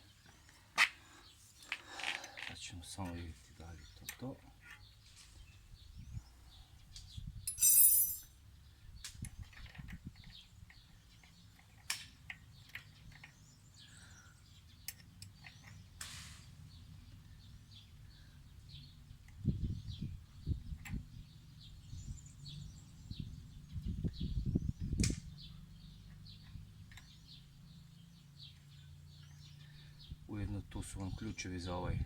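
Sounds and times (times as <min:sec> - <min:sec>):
wrenches clinking: 0:07.5 - 0:08.3
birds chirping: 0:21.1 - 0:32.0.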